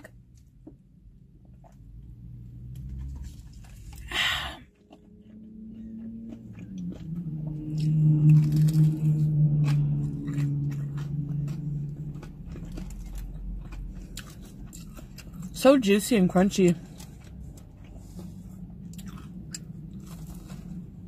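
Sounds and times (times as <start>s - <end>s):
steady low hum: 0.0s - 21.0s
crunchy bites and chewing: 4.6s - 15.6s, 16.7s - 21.0s.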